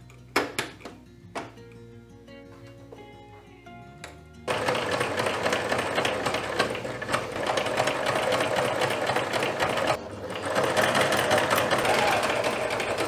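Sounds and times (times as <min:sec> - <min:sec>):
sewing machine stitching: 0:04.5 - 0:13.0.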